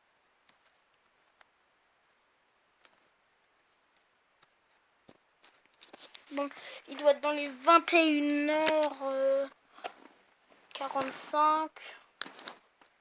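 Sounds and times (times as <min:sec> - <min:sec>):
faint irregular clicks: 0:07.3 - 0:11.3.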